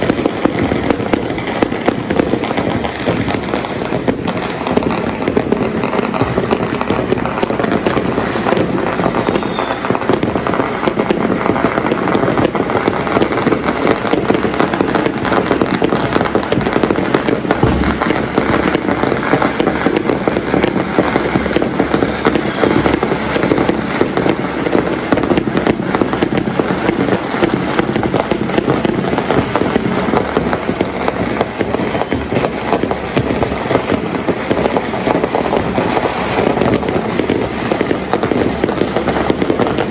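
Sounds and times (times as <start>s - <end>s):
firecrackers crackling: 0.0s - 39.9s.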